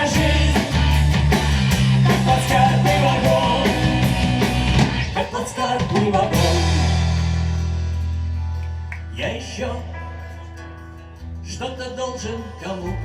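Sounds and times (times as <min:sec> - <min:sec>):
drum beat: 0:00.0 - 0:07.8
rock band playing: 0:00.0 - 0:13.0.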